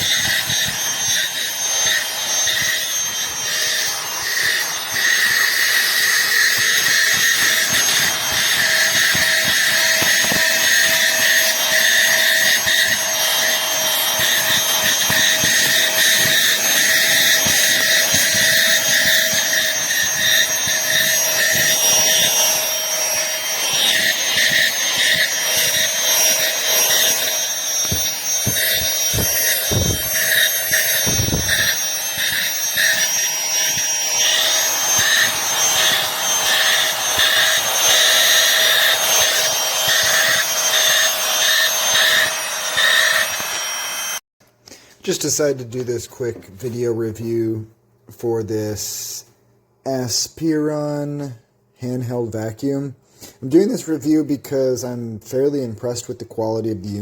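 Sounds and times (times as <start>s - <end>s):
handheld vacuum whining: 0.0s - 44.2s.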